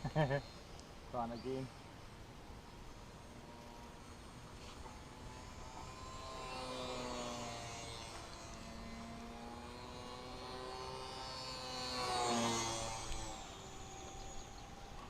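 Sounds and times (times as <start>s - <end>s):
model plane motor whining: 3.0s - 15.0s.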